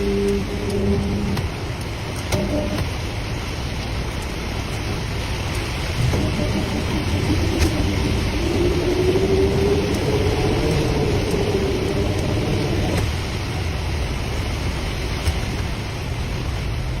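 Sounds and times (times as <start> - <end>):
motor hum: 0.0 - 3.0, 5.8 - 13.3
low rumble: 0.0 - 14.8
steady rushing noise: 0.0 - 17.0.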